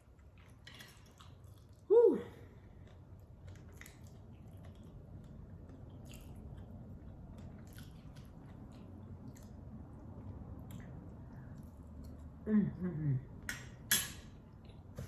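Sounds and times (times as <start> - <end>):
person chewing food: 0.0 - 1.9, 2.5 - 12.4.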